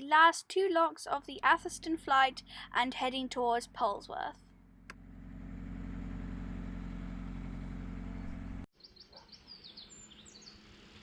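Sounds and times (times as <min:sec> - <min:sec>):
boat engine humming: 0:01.2 - 0:08.7
bird chirping: 0:08.1 - 0:11.0.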